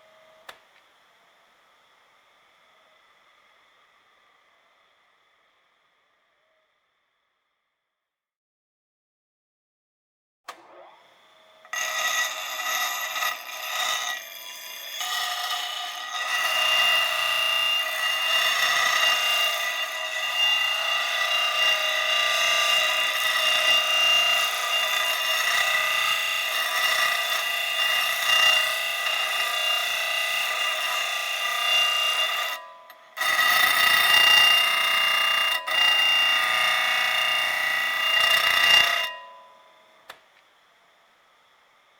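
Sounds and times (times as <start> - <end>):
click: 0.4 - 0.9, 10.5 - 10.7
power grinder grinding: 10.6 - 40.2.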